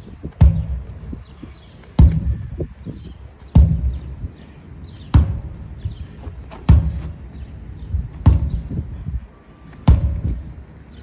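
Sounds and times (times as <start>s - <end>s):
sledgehammer striking a tire: 0.2s - 1.1s, 2.0s - 2.7s, 3.5s - 4.2s, 5.1s - 7.4s, 8.1s - 8.9s, 9.8s - 10.6s.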